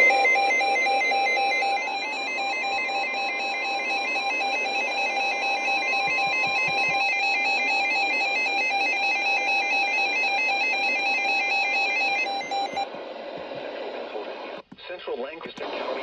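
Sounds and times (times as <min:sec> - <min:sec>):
steady long alert tone: 0:00.0 - 0:12.9
warbling electronic beeps: 0:00.0 - 0:12.9.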